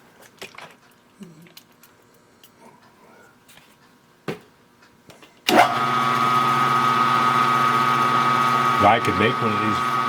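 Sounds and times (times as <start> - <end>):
electric motor whining: 5.5 - 10.0.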